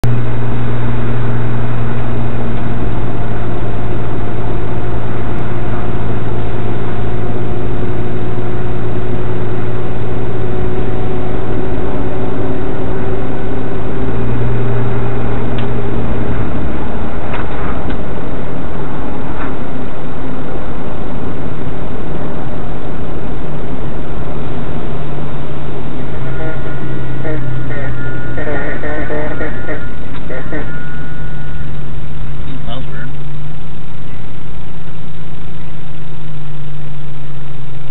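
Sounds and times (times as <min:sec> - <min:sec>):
car interior drone: 0:00.0 - 0:37.9
rising whine: 0:00.0 - 0:37.9.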